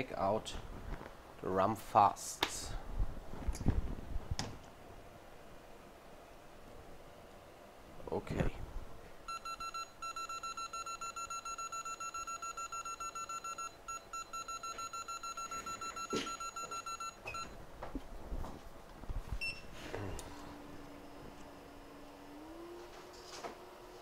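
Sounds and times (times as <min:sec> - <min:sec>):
steady low hum: 0:00.0 - 0:24.0
rapid high electronic beeps: 0:09.3 - 0:17.5
short single beep: 0:09.3 - 0:17.5.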